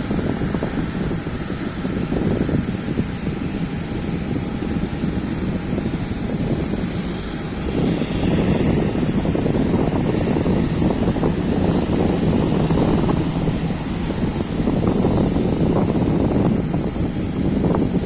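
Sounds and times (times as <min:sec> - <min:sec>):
aircraft engine rumble: 0:00.0 - 0:18.0
faint steady whine: 0:00.0 - 0:18.0
wind buffeting microphone: 0:00.0 - 0:18.0.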